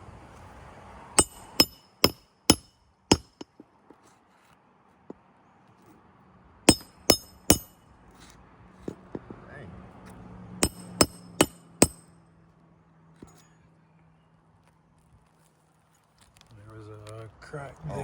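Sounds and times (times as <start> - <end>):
hammer striking metal: 1.2 - 3.5, 6.7 - 7.8, 10.6 - 12.0.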